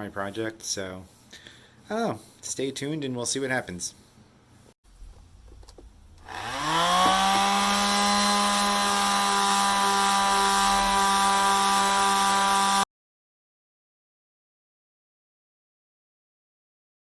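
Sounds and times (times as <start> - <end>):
power tool motor spinning: 6.2 - 12.8.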